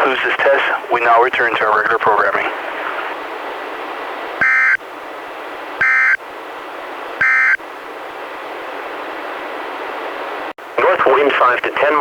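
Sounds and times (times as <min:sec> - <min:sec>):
radio hiss: 0:00.0 - 0:03.3, 0:10.8 - 0:12.0
two-tone digital data bursts: 0:04.4 - 0:04.8, 0:05.8 - 0:06.2, 0:07.2 - 0:07.6.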